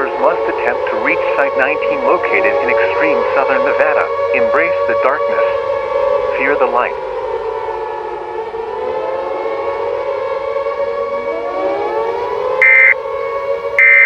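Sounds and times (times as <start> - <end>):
shrill electronic data burst: 12.6 - 13.0, 13.8 - 14.0
sirens wailing: 12.6 - 13.0, 13.8 - 14.0.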